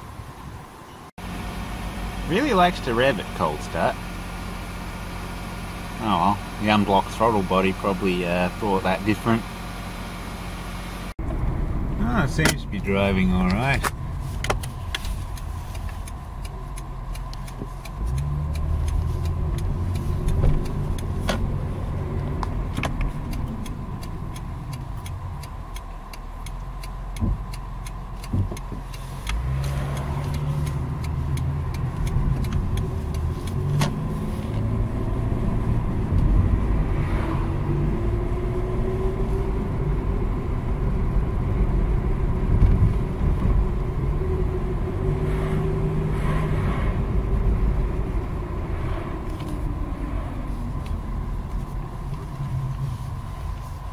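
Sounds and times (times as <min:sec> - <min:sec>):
car engine and road rumble: 0:00.0 - 0:53.9
rising whine: 0:29.3 - 0:53.9.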